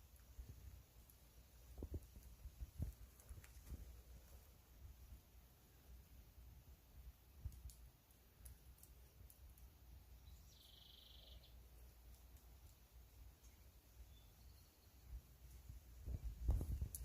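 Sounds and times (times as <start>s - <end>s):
faint clicks: 7.4s - 9.7s, 12.0s - 12.8s.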